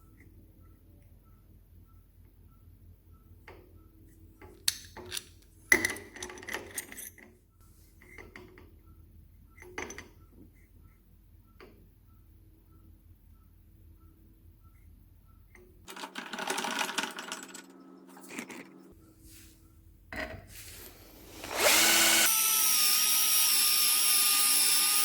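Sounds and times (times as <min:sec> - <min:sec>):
clattering rattle: 0:15.9 - 0:18.7.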